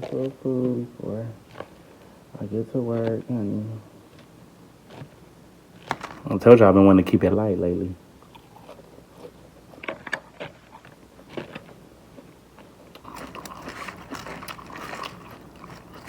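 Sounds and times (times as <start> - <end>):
person chewing crunchy food: 1.4 - 2.2, 3.6 - 6.6, 8.2 - 16.0.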